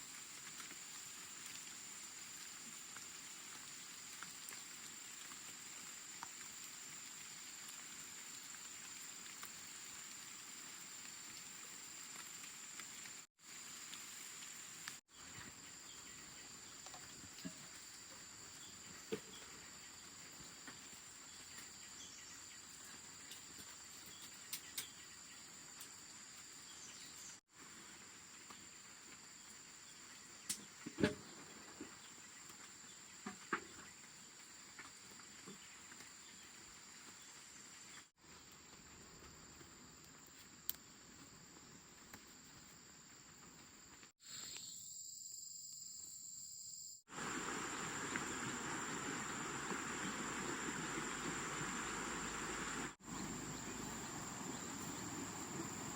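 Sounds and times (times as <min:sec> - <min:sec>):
insects droning: 0:00.0 - 0:55.9.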